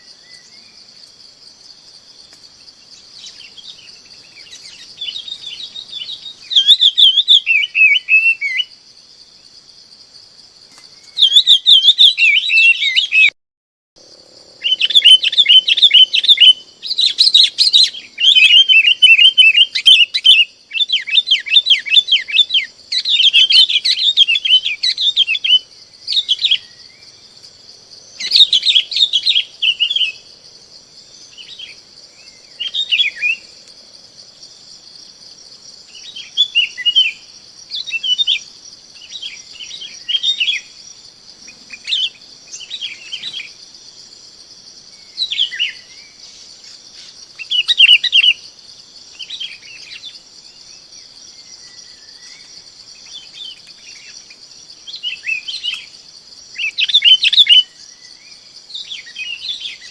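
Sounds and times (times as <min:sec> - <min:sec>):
bulbuls chirping: 0:14.6 - 0:27.2
steady high hiss: 0:22.6 - 0:59.9.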